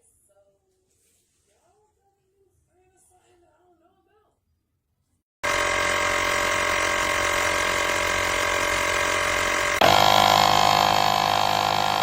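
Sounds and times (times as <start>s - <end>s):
small electric air compressor running: 5.4s - 12.0s.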